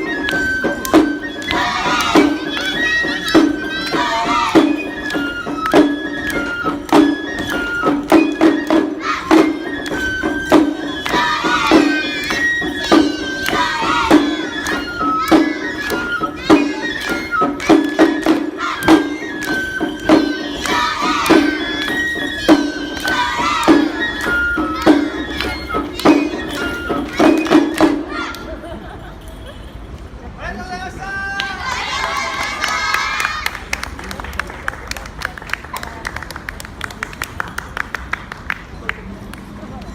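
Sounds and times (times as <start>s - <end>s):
high melody: 0.0s - 28.1s
wavering high pitched sounds: 0.0s - 28.4s.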